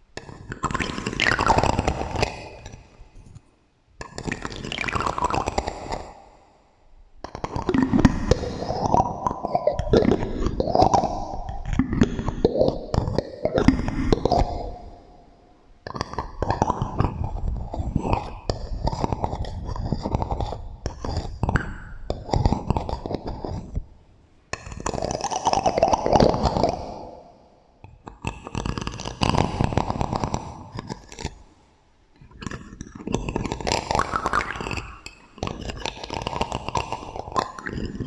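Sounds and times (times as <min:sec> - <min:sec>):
echoing tapping and scratching: 0:32.2 - 0:38.0.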